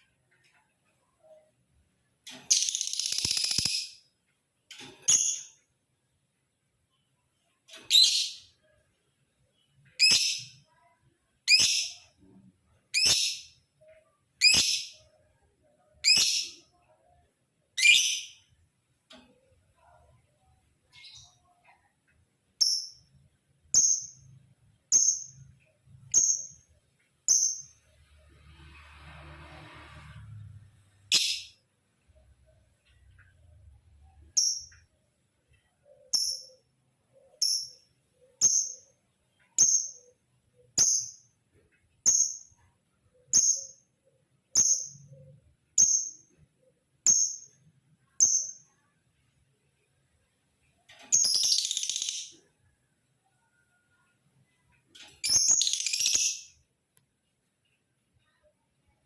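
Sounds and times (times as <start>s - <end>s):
lovebird chirping: 2.3s - 4.1s, 4.7s - 5.6s, 7.7s - 8.8s, 9.5s - 12.2s, 12.9s - 15.2s, 15.9s - 17.2s, 17.8s - 18.6s, 20.8s - 21.9s, 22.6s - 27.9s, 31.0s - 31.6s, 34.0s - 41.4s, 44.5s - 48.9s, 51.0s - 52.7s, 53.3s - 56.7s.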